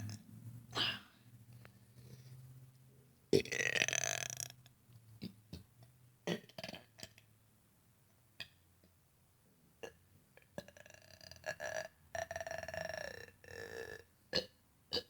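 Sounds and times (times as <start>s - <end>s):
loud burp: 3.3s - 4.6s, 10.6s - 15.0s.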